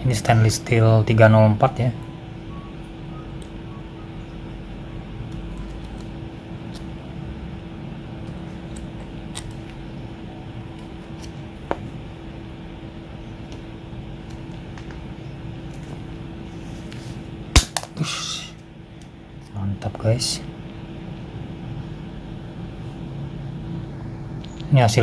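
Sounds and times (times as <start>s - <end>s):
steady hum: 0.0s - 25.0s.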